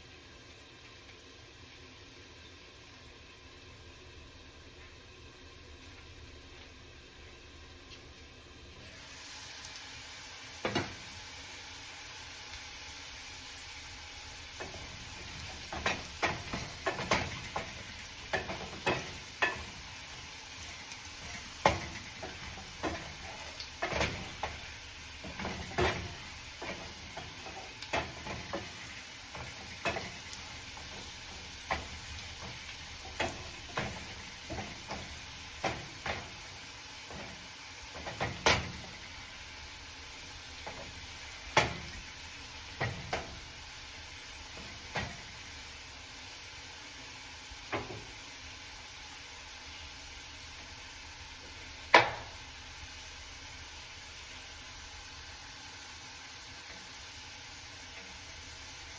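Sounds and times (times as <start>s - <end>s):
potatoes sizzling in a pan: 0.0s - 58.9s
utensil clacking and scraping pan: 14.5s - 20.0s, 20.6s - 39.2s, 40.6s - 42.1s, 42.7s - 43.5s.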